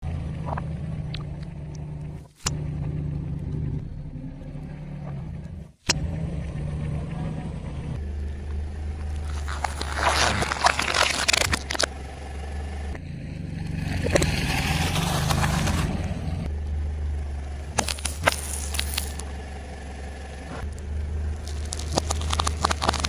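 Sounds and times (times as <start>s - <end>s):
car engine hum: 0.0s - 23.0s
tyre crunching objects: 9.0s - 11.9s, 14.7s - 15.9s, 17.7s - 19.2s, 21.4s - 23.0s.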